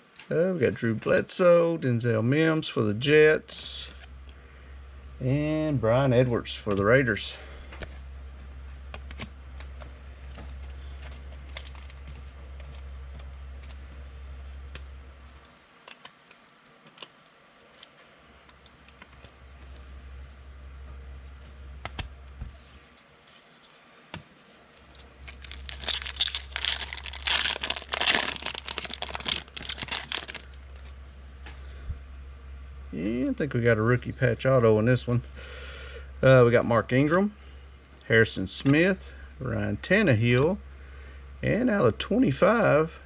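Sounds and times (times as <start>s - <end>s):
steady low hum: 0.0s - 43.0s
wrapper tearing and crinkling: 11.5s - 12.1s, 25.2s - 30.9s.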